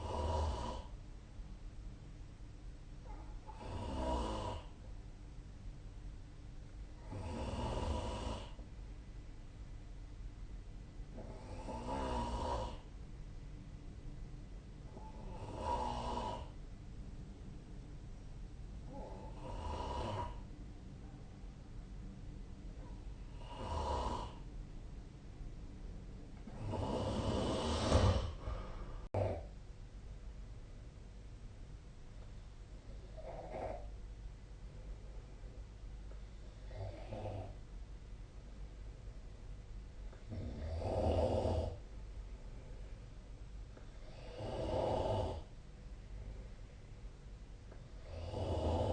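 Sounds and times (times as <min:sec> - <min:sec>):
person snoring: 0:00.0 - 0:00.9, 0:03.5 - 0:04.8, 0:07.0 - 0:08.6, 0:11.2 - 0:12.9, 0:15.0 - 0:16.6, 0:18.9 - 0:20.5, 0:23.3 - 0:24.4, 0:26.5 - 0:29.5, 0:33.0 - 0:33.9, 0:36.5 - 0:37.6, 0:40.2 - 0:41.8, 0:44.0 - 0:45.5, 0:48.0 - 0:48.9
steady low hum: 0:00.0 - 0:48.9.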